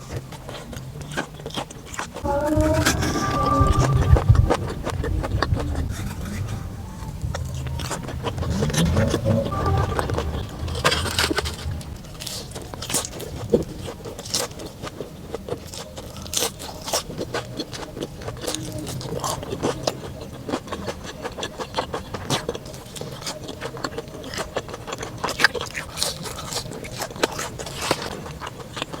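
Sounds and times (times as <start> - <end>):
food crunching and chewing: 0.0 - 2.2, 12.2 - 29.0.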